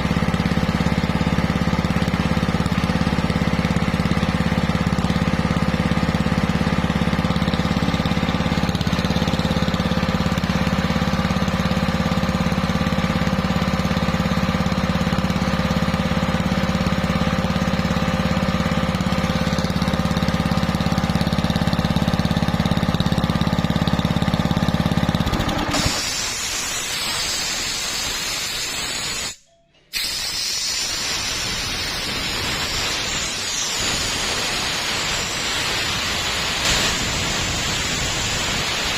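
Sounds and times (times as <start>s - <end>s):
air compressor humming: 0.0s - 38.9s
compressed air hissing: 25.7s - 38.9s.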